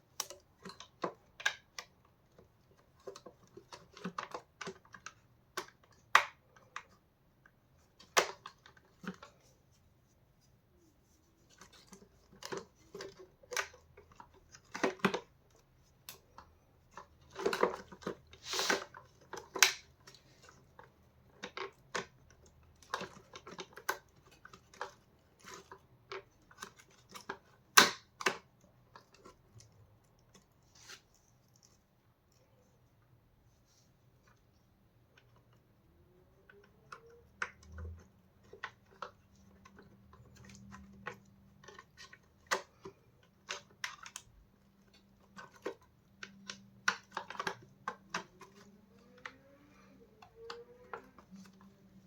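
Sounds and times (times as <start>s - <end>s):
plastic parts clicking and knocking: 0.0s - 9.5s, 11.4s - 30.6s, 34.2s - 52.0s.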